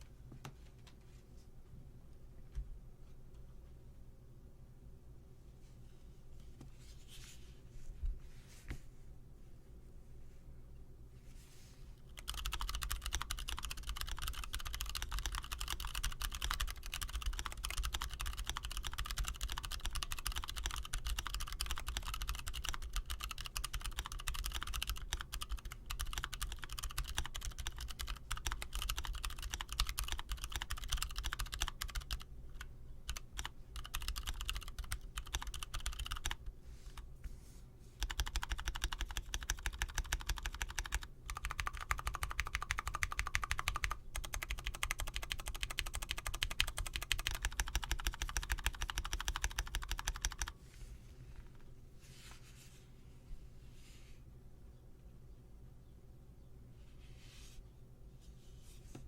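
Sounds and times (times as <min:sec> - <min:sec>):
typing on mechanical keyboard: 0:12.2 - 0:36.4, 0:38.0 - 0:50.6.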